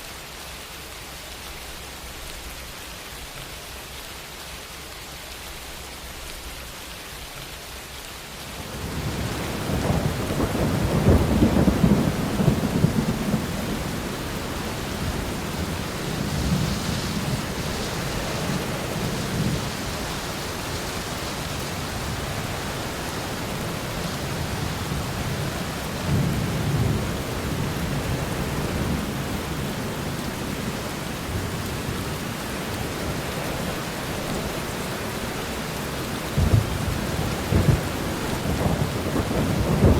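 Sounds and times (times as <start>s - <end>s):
steady rain: 0.0s - 39.9s
rolling thunder: 8.7s - 32.2s, 36.2s - 39.9s.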